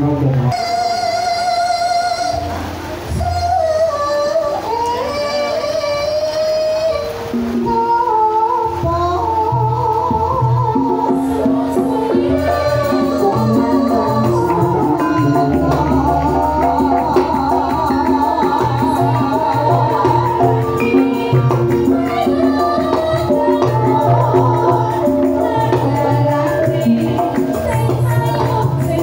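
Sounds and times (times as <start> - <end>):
person singing: 0.0 - 29.0
ensemble music with percussion: 8.8 - 29.0.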